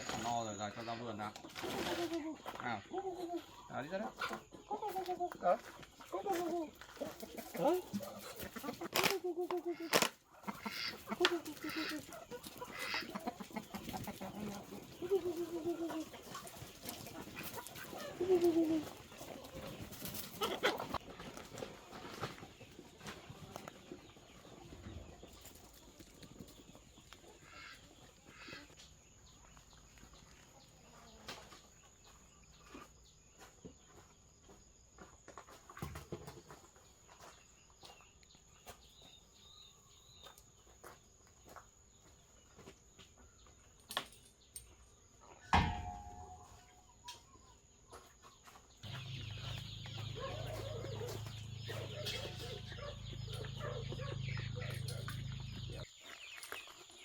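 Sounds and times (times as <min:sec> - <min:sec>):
chickens clucking: 0:00.0 - 0:43.8, 0:44.9 - 0:57.0.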